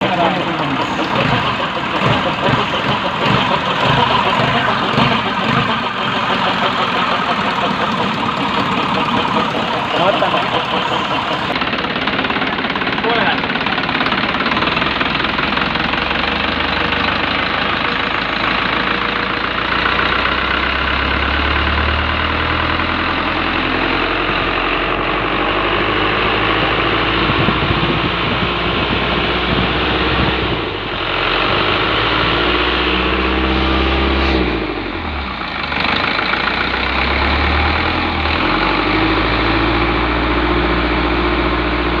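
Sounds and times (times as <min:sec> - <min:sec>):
diesel engine idling: 0:00.0 - 0:42.0.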